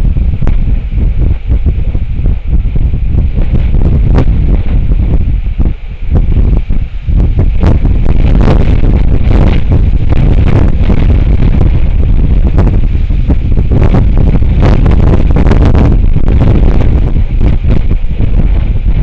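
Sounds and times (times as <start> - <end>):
strong wind buffeting microphone: 0.0 - 19.0.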